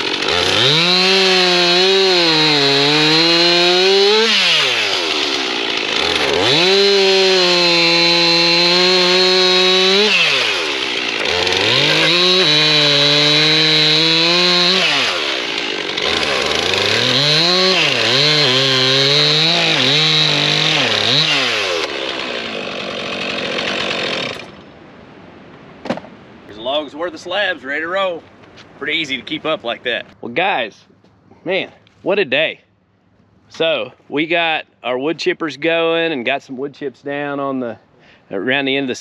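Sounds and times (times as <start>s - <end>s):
chainsaw cutting wood: 0.0s - 24.6s.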